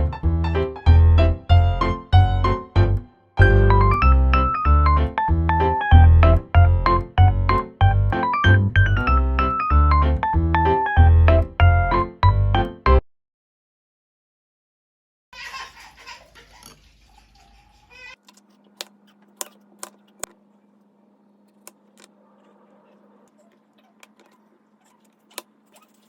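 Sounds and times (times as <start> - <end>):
infant babbling and giggling: 15.4 - 18.2.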